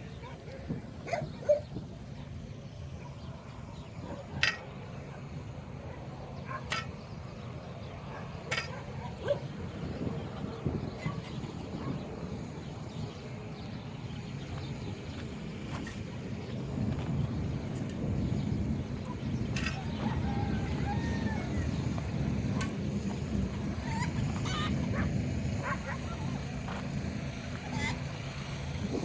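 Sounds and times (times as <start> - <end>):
low outdoor background: 0.0 - 29.0
dogs barking: 0.1 - 2.3, 2.9 - 3.4, 4.0 - 7.0, 8.0 - 9.6, 10.9 - 12.1, 23.8 - 26.5.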